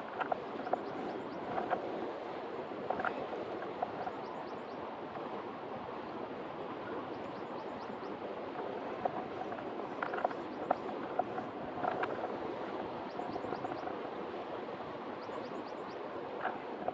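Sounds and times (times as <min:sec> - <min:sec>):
faint clicks: 0:08.6 - 0:12.3.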